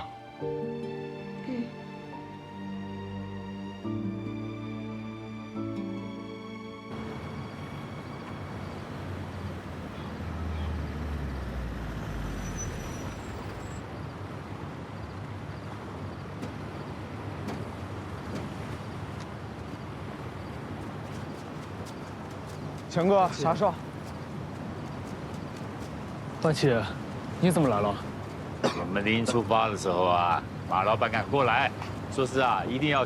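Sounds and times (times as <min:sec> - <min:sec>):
soft background music: 0:00.0 - 0:09.8
wind: 0:00.0 - 0:33.0
sea: 0:05.1 - 0:33.0.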